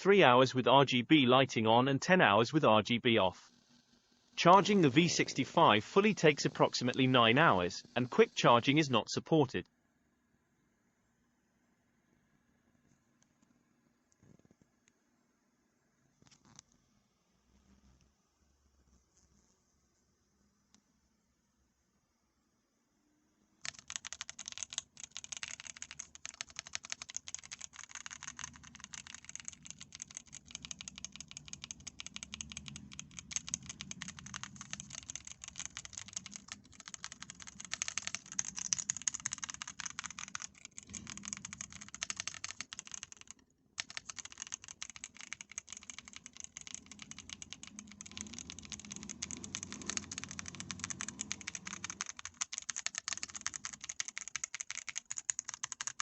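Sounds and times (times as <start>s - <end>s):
keyboard keys clicking: 23.6s - 56.0s.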